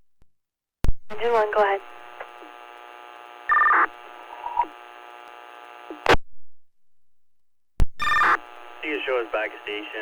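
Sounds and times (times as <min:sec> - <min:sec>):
radio channel hiss: 0:01.2 - 0:06.2, 0:08.2 - 0:10.0
radio squelch click: 0:03.7 - 0:06.2
two-tone radio data burst: 0:08.0 - 0:10.0.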